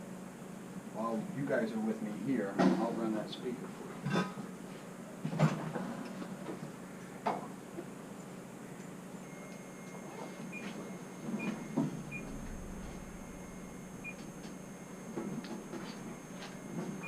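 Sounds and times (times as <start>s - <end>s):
faint steady electronic tone: 8.1s - 17.0s
short electronic beeps: 9.2s - 17.0s.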